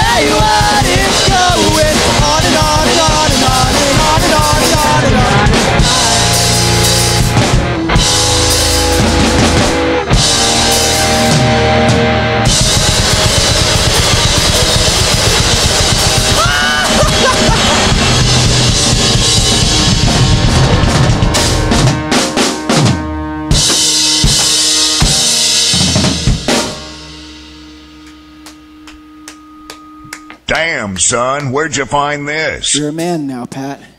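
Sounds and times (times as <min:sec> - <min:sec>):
drum hits: 0:00.0 - 0:29.5
rock band playing: 0:00.0 - 0:31.3.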